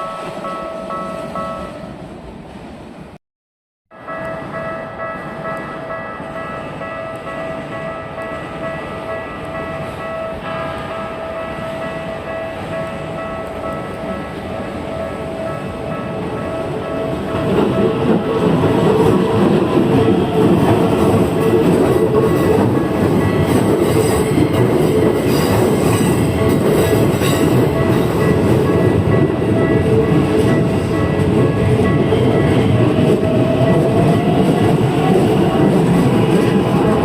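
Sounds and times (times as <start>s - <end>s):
train wheels rumbling on rails: 4.0s - 37.0s.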